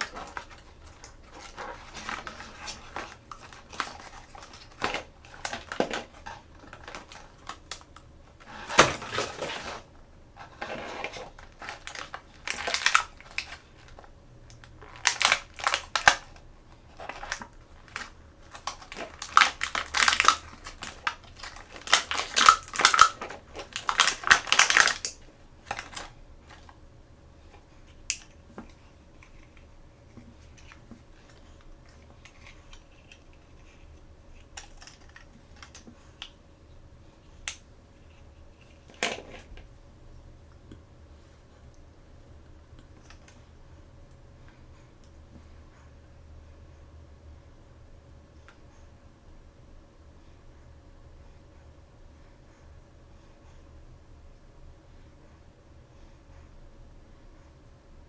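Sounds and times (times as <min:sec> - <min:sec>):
plastic wrap crinkling: 0:00.0 - 0:26.8
plastic toy parts clicking: 0:18.5 - 0:26.0.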